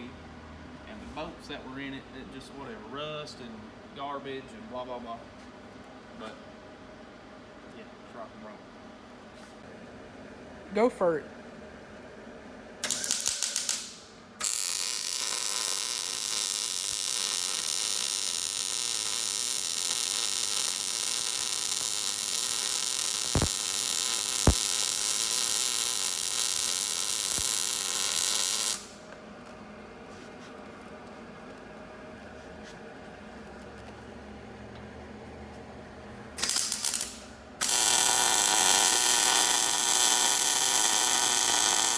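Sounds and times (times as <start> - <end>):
arc welding crackling: 12.8 - 29.0, 36.4 - 41.9.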